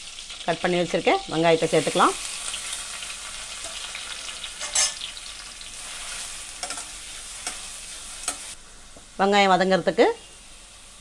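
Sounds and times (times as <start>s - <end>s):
onions sizzling in oil: 0.0s - 11.0s
stirring scrapes and knocks: 5.8s - 8.6s.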